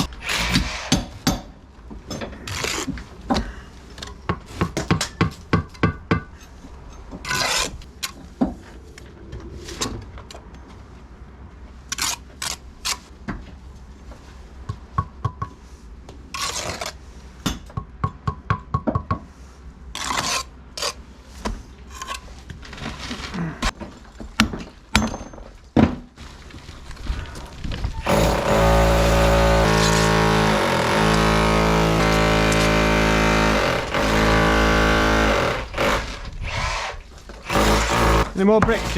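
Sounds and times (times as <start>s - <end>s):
tool scraping brick: 7.2s - 7.9s, 20.0s - 21.0s, 28.0s - 38.9s.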